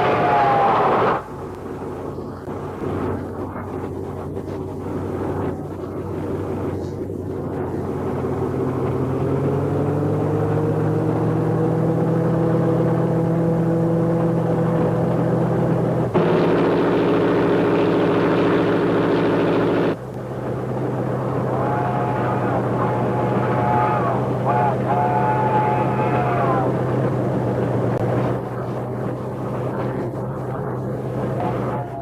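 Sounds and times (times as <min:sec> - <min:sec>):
locomotive engine droning: 0:00.0 - 0:32.0.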